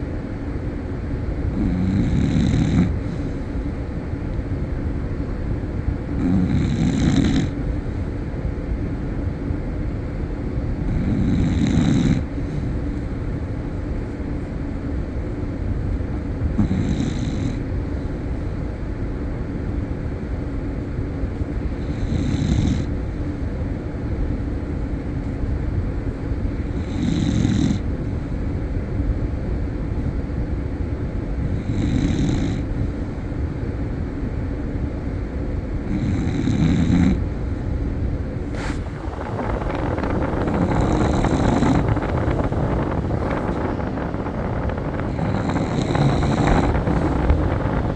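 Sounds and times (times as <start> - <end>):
steady low hum: 0.0 - 47.9
loud snore: 1.4 - 3.3, 6.2 - 7.6, 10.9 - 12.4, 16.6 - 17.6, 21.9 - 22.9, 26.8 - 27.8, 31.6 - 32.7, 35.9 - 37.3, 38.5 - 47.9.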